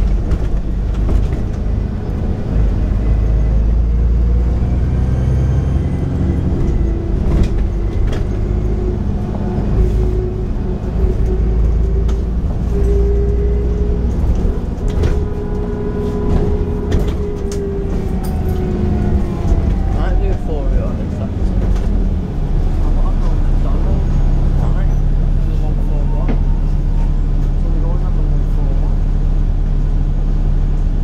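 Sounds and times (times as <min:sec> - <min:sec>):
rattles and knocks: 0:00.0 - 0:01.8, 0:06.5 - 0:20.5
bus diesel engine rumble: 0:00.0 - 0:31.0.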